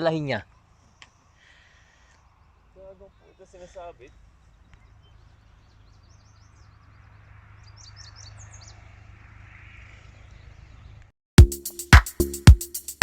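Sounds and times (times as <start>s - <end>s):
small birds chirping: 0.0s - 11.1s.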